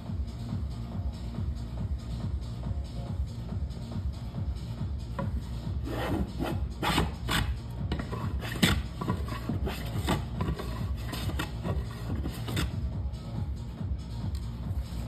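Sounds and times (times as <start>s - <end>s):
hand tool rasping wood: 5.2s - 12.8s.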